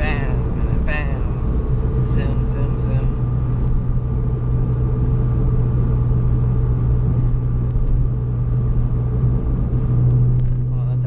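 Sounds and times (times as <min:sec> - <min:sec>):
car engine drone: 0:00.0 - 0:11.0
road rumble: 0:00.0 - 0:11.0.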